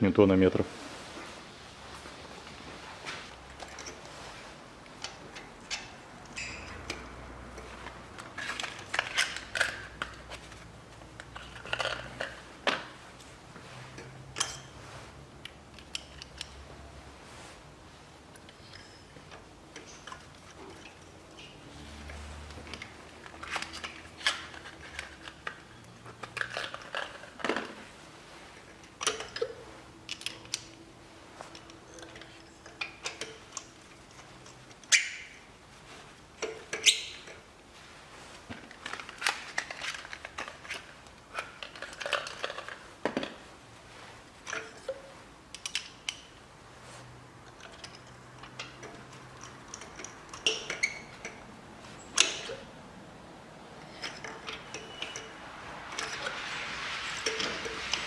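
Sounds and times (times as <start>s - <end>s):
metal tools clinking: 5.0s - 10.6s, 11.2s - 12.5s, 18.4s - 27.8s, 28.6s - 30.8s, 44.4s - 52.8s, 53.8s - 58.0s.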